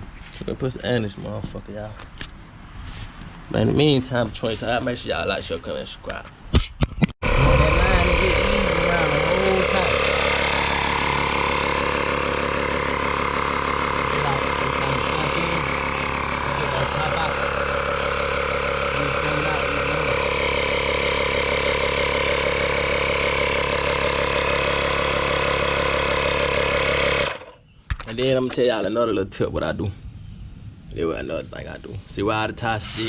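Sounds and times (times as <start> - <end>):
air compressor motor humming: 7.2 - 27.6, 32.8 - 33.0.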